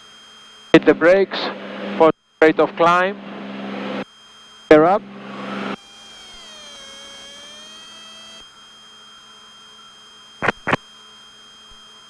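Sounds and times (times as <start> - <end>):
steady electrical hum: 0.8 - 4.0, 4.7 - 5.8
landing gear motor whining: 4.7 - 8.5
sharp click: 10.4 - 10.8.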